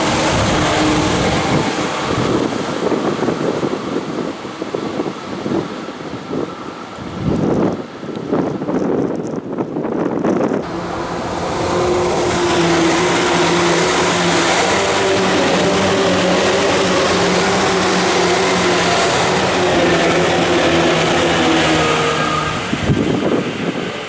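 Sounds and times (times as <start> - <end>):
train running noise: 0.0 - 24.0
electric train motor whine: 10.6 - 24.0.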